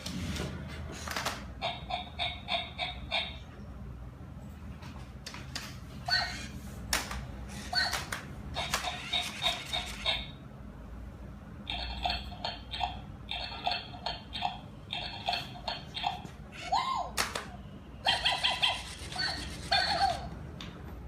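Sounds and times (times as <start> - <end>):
synthetic chirping toy noises: 1.3 - 3.6, 6.0 - 6.7, 7.4 - 10.4, 11.6 - 20.4.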